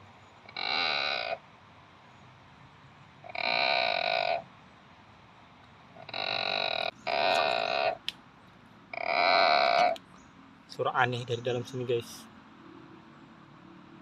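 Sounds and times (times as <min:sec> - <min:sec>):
nasal bleat-like animal call: 0:06.0 - 0:08.0, 0:09.0 - 0:10.0.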